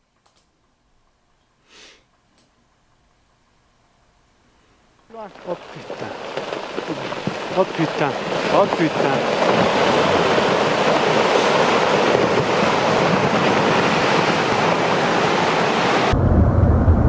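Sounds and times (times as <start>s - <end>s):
steady rushing roar: 5.1s - 17.0s
deep low rumble: 16.1s - 17.0s.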